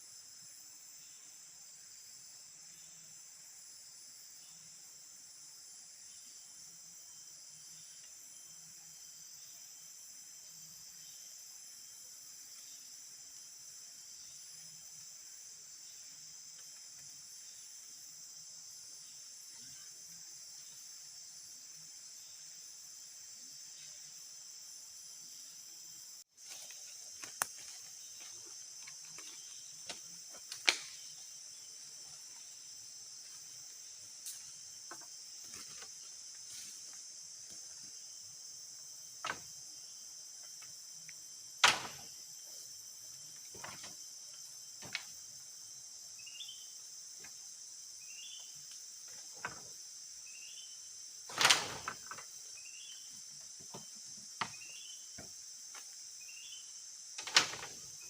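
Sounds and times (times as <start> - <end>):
insects droning: 0.0 - 58.0
sharp knocks and snaps: 29.2 - 31.0.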